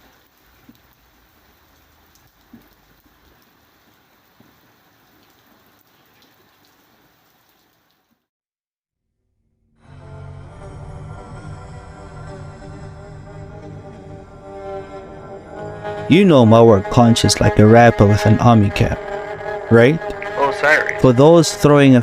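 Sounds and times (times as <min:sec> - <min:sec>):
rain falling: 0:00.0 - 0:08.3
music: 0:09.8 - 0:22.0.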